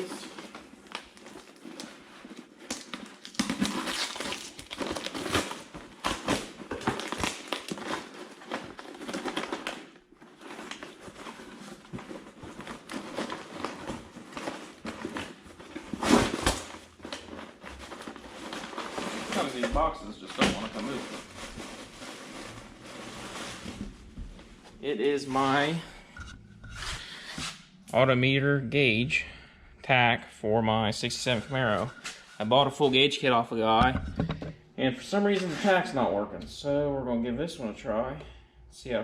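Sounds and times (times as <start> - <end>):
cardboard crinkling and rustling: 0.0 - 25.8
box scraping and knocking: 33.8 - 34.6.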